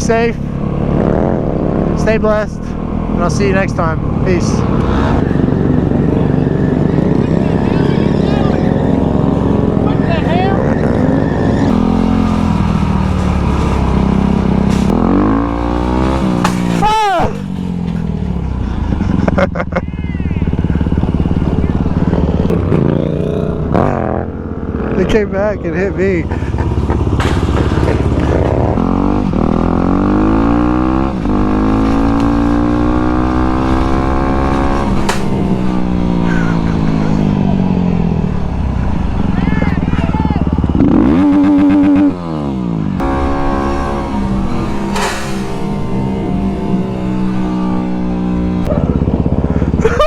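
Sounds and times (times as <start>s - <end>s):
vehicle engine revving: 0.0s - 50.0s
high-pitched squeal: 43.0s - 48.9s.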